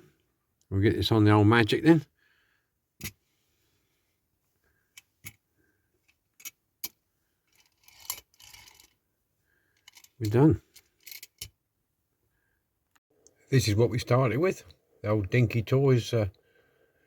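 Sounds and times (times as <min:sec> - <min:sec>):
toy clicks and metal taps: 0:09.8 - 0:11.6.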